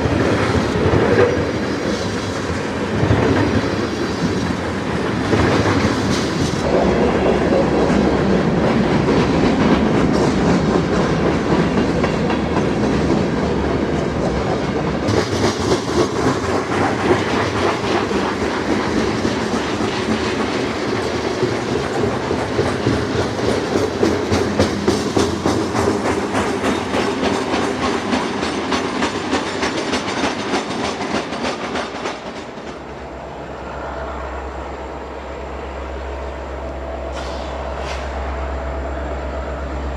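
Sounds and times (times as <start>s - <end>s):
wheels clicking over rail joints: 0.0s - 33.0s
freight train rumbling past: 0.0s - 39.9s.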